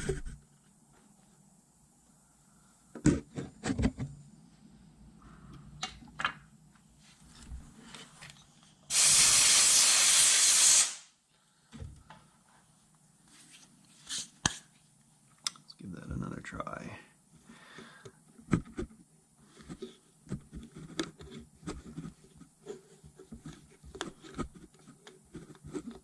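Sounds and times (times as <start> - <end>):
pressurised spray hissing: 8.9 - 11.1.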